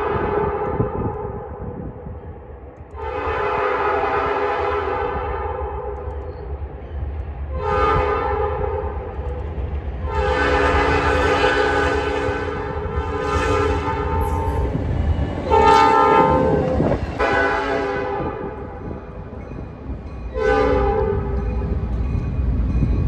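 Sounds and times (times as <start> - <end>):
train rumble: 0.0 - 23.0
locomotive air horn blasts: 3.0 - 5.4, 7.6 - 8.8, 10.0 - 19.0, 20.4 - 21.4.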